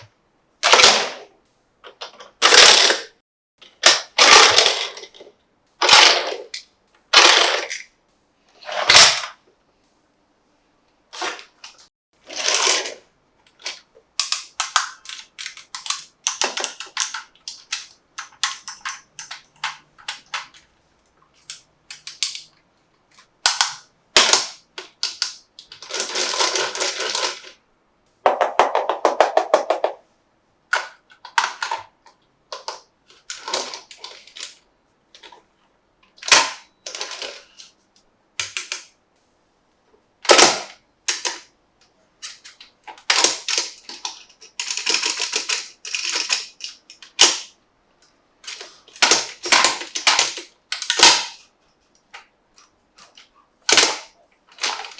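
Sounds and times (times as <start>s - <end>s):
plastic toy parts rattling: 3.7s - 7.9s, 11.1s - 20.7s, 21.4s - 27.6s, 30.7s - 31.9s, 32.5s - 35.5s, 36.2s - 37.8s, 40.3s - 41.5s, 42.2s - 47.5s, 48.4s - 51.5s, 52.1s - 54.9s
plastic toy parts clicking: 11.2s - 20.7s, 21.4s - 27.6s, 30.7s - 35.4s, 38.4s - 38.9s, 40.3s - 41.5s, 42.2s - 47.5s, 48.4s - 51.5s, 52.1s - 54.9s.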